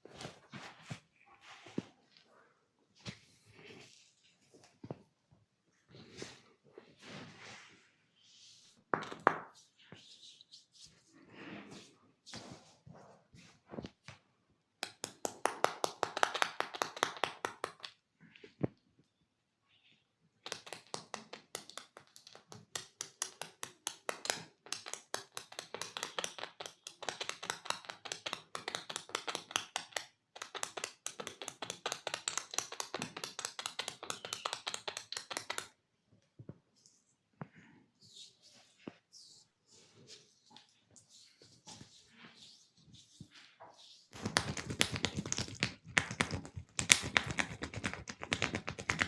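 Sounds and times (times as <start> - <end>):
hands tapping in massage: 8.9 - 9.6, 14.8 - 18.0, 20.4 - 35.8, 44.1 - 49.0.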